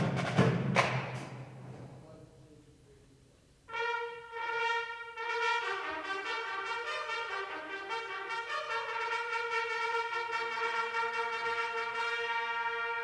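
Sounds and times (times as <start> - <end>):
drums playing: 0.0 - 1.7
brass chords with trumpets: 3.7 - 13.0.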